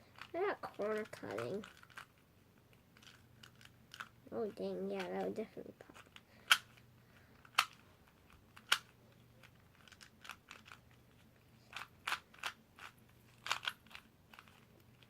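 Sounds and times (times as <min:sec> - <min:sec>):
plastic puzzle cube clicking: 0:00.1 - 0:02.2, 0:03.0 - 0:04.1, 0:05.9 - 0:06.8, 0:07.4 - 0:15.0.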